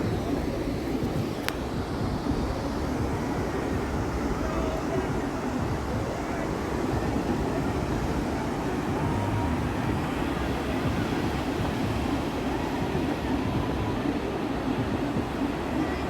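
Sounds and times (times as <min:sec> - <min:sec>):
surf: 0:00.0 - 0:16.0
wind on microphone: 0:00.0 - 0:16.0.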